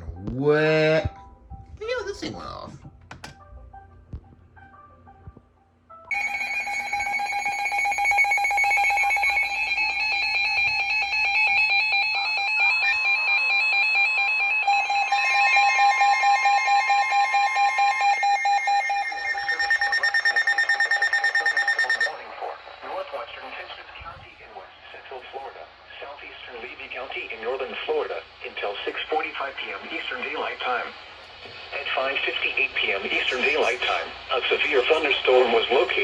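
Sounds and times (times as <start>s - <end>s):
pulsing electronic alert tones: 6.1s - 22.2s.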